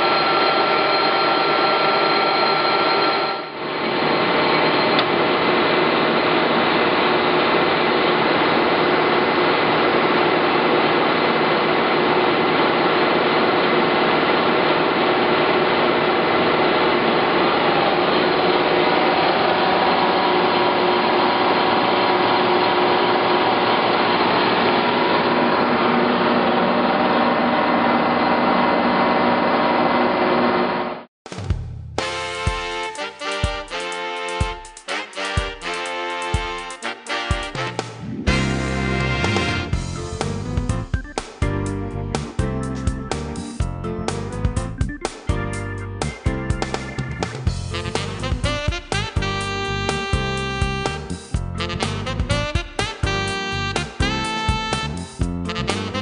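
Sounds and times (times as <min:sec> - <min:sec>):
gear whine: 0:00.0 - 0:05.4
lathe running: 0:00.0 - 0:31.0.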